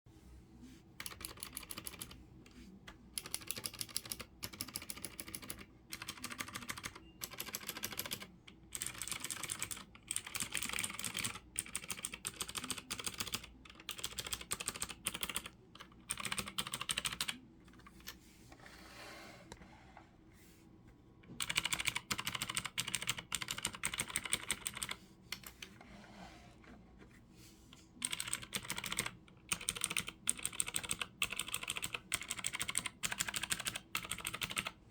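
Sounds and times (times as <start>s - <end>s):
mechanical keyboard typing clicks: 1.0s - 2.2s, 3.2s - 17.4s, 21.4s - 25.6s, 28.0s - 34.8s.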